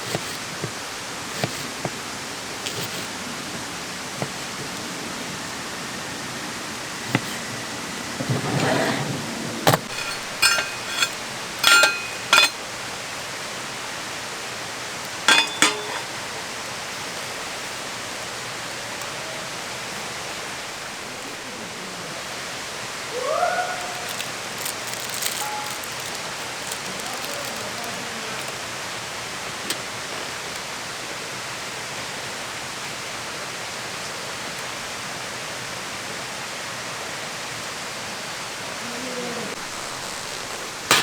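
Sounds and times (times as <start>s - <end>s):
steady rushing hiss: 0.0s - 23.2s
metal cookware clinking: 9.8s - 12.6s, 15.2s - 16.1s.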